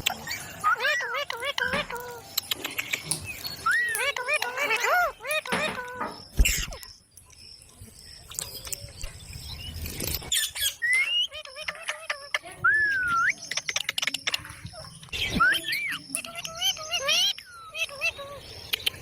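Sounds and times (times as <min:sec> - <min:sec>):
parrot chirping and whistling: 0:03.3 - 0:06.8, 0:10.3 - 0:14.0, 0:15.2 - 0:18.1.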